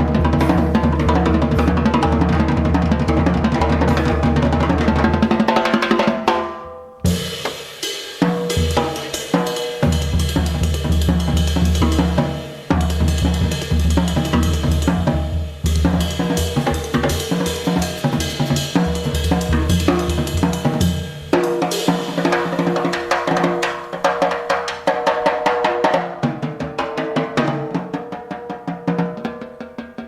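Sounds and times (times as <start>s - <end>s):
drum kit playing: 0.0s - 30.0s
bass notes: 18.7s - 21.2s.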